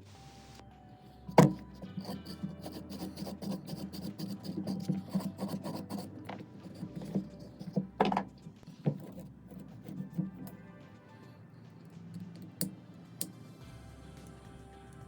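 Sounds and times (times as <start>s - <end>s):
rifle parts rubbing and scraping: 4.4s - 10.6s.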